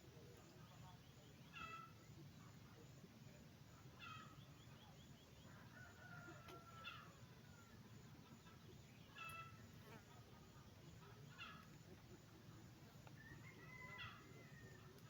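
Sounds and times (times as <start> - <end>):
faint animal calls: 1.4 - 2.2, 3.9 - 7.8, 8.4 - 10.2, 10.9 - 12.3, 12.9 - 15.0.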